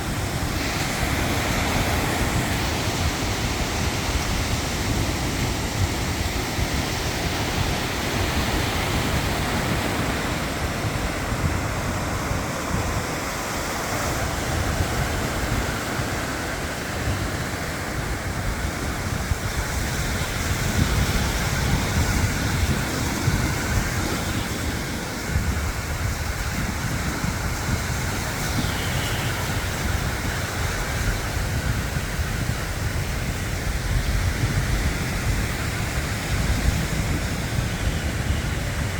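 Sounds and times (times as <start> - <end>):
sea surf washing: 0.0 - 38.9
wind gusting over microphone: 0.0 - 38.9.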